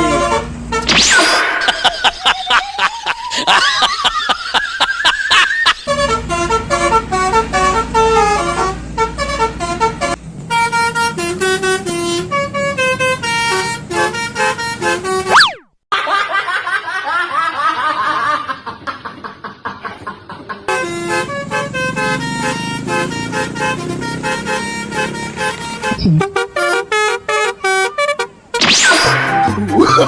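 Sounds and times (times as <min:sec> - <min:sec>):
bus horn playing a tune: 0:00.0 - 0:01.0, 0:05.8 - 0:15.4, 0:20.7 - 0:30.0
wavering whistle-like glide: 0:15.3 - 0:15.7.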